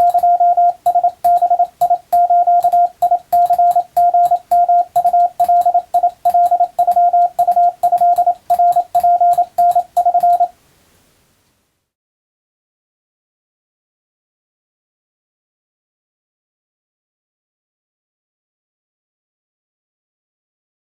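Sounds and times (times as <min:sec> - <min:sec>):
morse code tone: 0:00.0 - 0:10.5.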